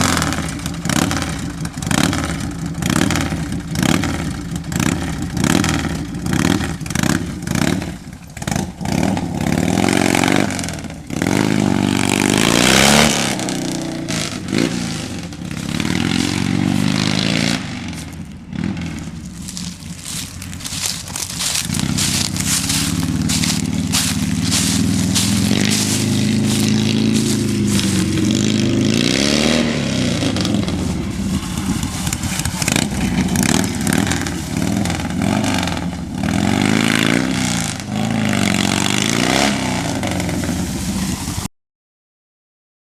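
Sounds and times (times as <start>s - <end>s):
motorcycle engine revving: 0.0s - 41.5s.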